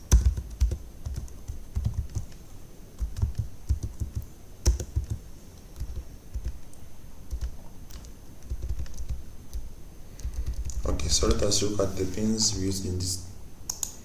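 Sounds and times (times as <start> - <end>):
computer keyboard typing: 0.0 - 2.4, 3.0 - 5.2, 5.8 - 9.6, 10.2 - 10.9.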